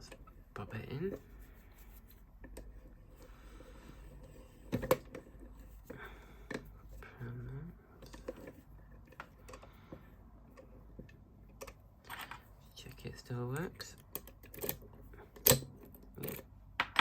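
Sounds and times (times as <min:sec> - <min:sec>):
padlock clicking and knocking: 0:15.4 - 0:17.0.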